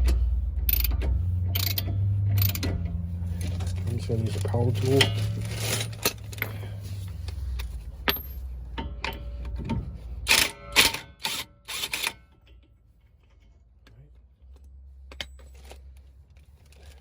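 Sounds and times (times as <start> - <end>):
impact wrench hammering: 10.3 - 12.2.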